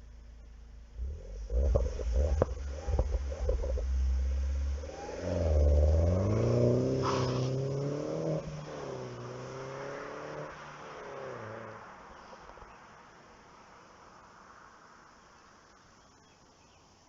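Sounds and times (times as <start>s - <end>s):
car engine revving: 0.0s - 12.7s.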